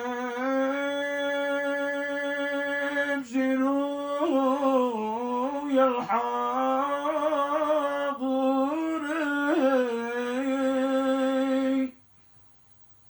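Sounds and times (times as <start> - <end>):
man singing a devotional chant: 0.0 - 12.1.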